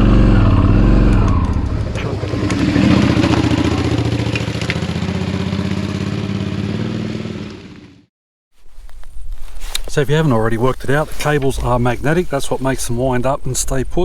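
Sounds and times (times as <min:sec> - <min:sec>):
motorcycle engine running: 0:00.0 - 0:08.1.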